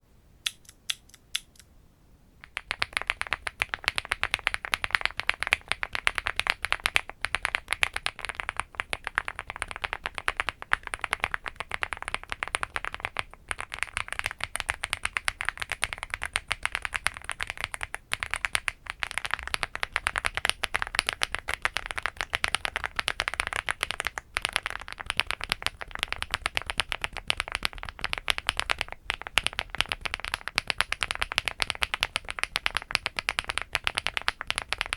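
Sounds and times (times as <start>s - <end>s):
typing on mechanical keyboard: 2.4s - 34.9s.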